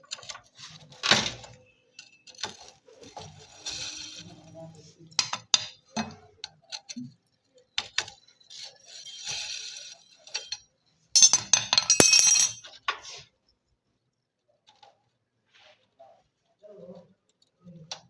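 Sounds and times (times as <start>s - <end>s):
metal tools clinking: 11.2s - 12.6s.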